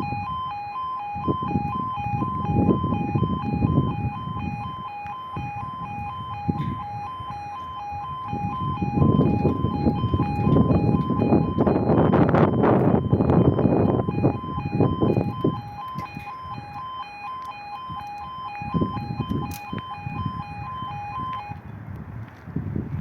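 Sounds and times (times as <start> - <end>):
low rumbling noise: 0.0 - 17.2
two-tone level crossing alarm: 0.0 - 21.6.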